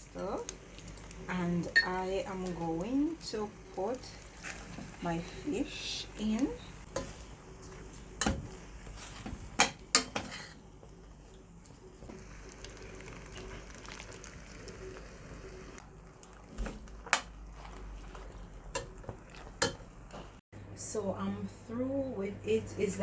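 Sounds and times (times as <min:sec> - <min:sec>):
faint sizzle: 0:00.0 - 0:23.0
utensil scraping a pot: 0:09.9 - 0:10.6.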